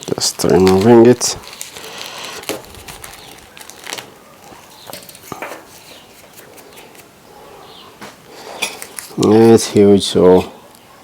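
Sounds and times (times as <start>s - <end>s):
faint wire clicks and scrapes: 1.5s - 7.2s.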